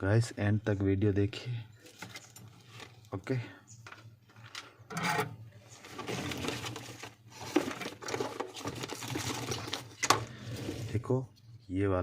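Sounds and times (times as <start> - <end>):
hand tools scraping and clicking: 4.0 - 5.8.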